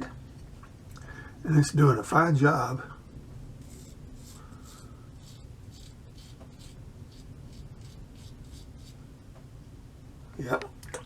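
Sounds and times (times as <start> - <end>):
razor scraping whiskers: 3.6 - 9.0.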